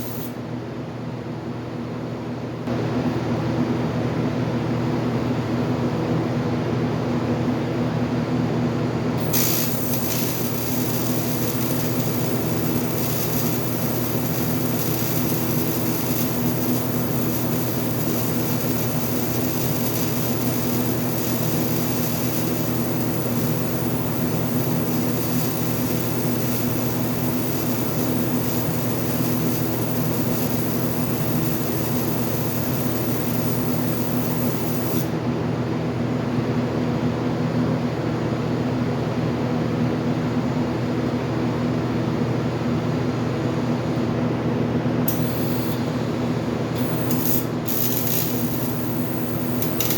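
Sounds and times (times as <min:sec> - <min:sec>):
welding arc hum and hiss: 0:00.0 - 0:00.5, 0:09.1 - 0:35.3, 0:42.3 - 0:49.9.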